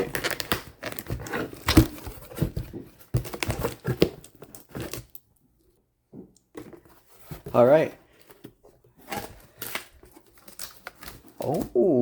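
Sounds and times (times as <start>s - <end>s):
packaging crinkling: 0.0s - 2.6s, 9.0s - 11.8s.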